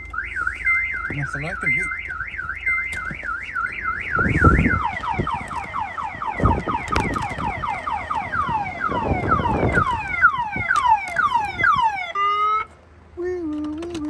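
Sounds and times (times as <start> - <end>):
low thumps: 0.0 - 11.9
car alarm siren: 0.0 - 12.8.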